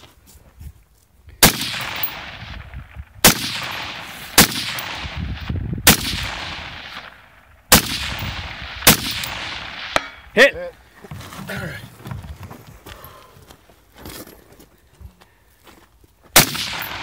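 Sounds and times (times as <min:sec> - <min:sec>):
rifle shots with echo: 0:01.4 - 0:10.3, 0:16.4 - 0:17.0.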